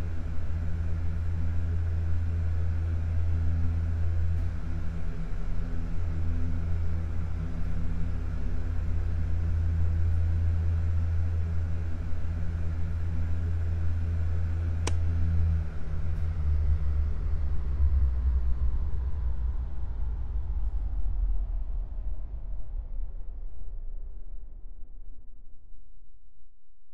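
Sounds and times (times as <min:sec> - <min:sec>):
sharp click: 0:14.8 - 0:15.1.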